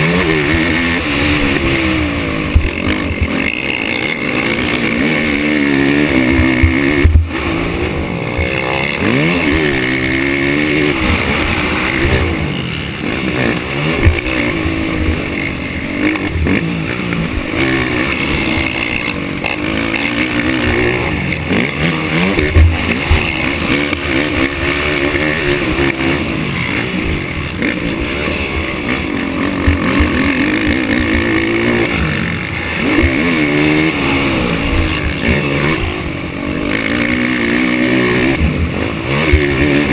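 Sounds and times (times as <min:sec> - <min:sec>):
quad bike engine revving: 0:00.0 - 0:39.9.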